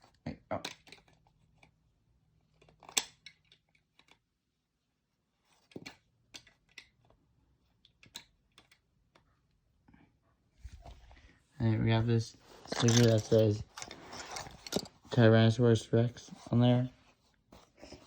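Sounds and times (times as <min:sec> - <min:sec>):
plastic toy bricks clicking: 0:00.6 - 0:01.7, 0:02.6 - 0:04.2, 0:07.9 - 0:08.9, 0:12.7 - 0:14.9.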